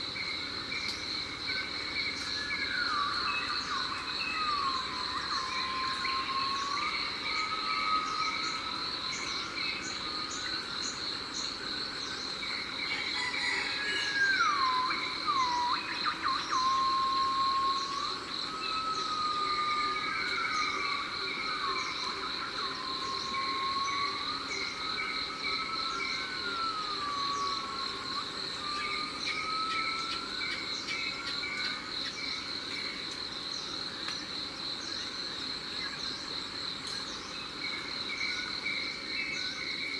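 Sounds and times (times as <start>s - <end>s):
high-pitched insect drone: 2.4s - 11.5s, 12.5s - 32.6s.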